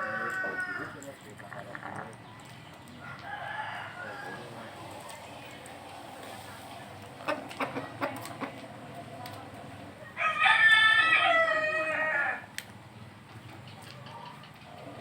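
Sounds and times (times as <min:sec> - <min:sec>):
rooster crowing: 0:00.0 - 0:01.0, 0:03.0 - 0:04.5, 0:10.2 - 0:12.5.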